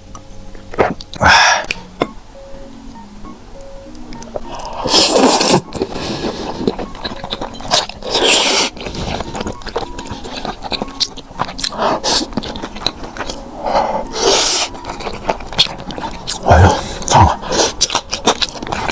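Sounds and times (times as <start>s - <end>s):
chewing and biting: 4.1s - 18.9s.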